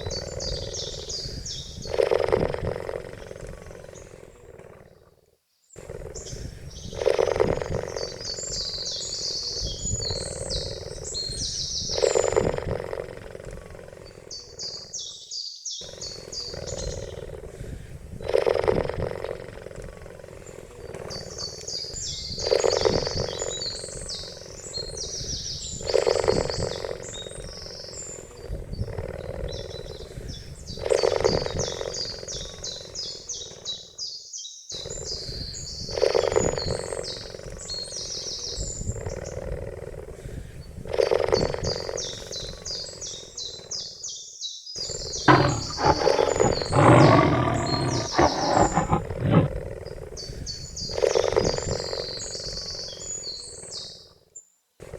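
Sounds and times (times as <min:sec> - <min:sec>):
cheetah calling: 0:45.3 - 0:49.6.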